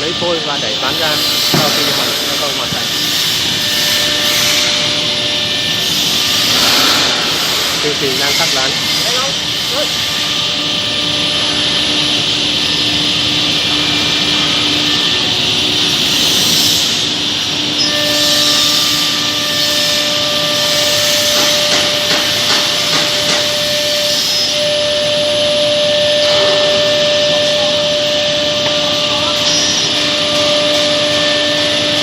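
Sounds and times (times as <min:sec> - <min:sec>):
thin machine whine: 0:00.0 - 0:32.0
router bit hissing in wood: 0:00.8 - 0:04.8, 0:05.8 - 0:10.1.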